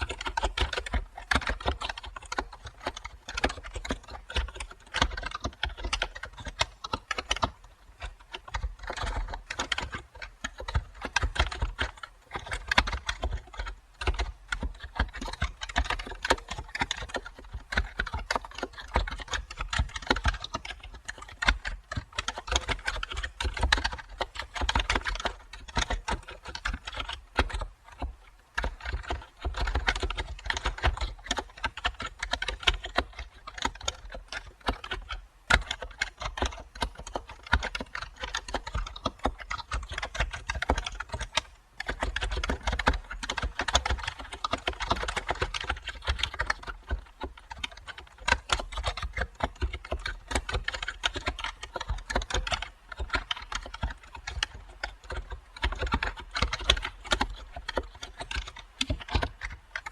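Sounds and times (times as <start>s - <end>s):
typing on computer keyboard: 0.0s - 59.9s.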